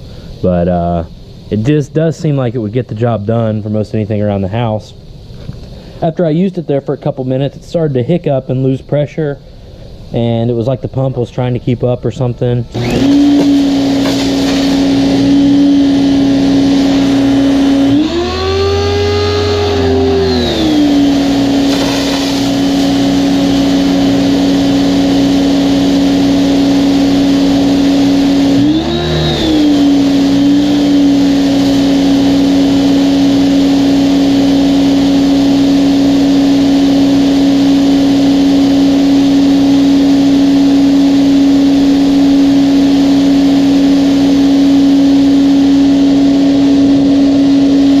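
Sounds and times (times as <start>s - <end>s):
pressure washer motor humming: 12.6s - 48.0s.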